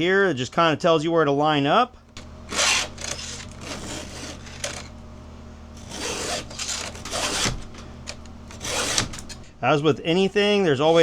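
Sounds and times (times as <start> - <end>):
file scraping chainsaw chain: 2.1 - 5.0, 5.8 - 9.6.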